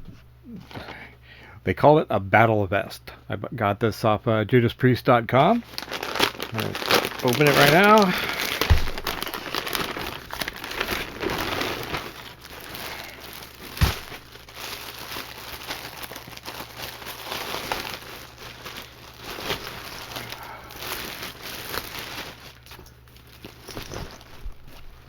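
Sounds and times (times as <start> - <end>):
packaging torn and crinkled: 5.6 - 24.8.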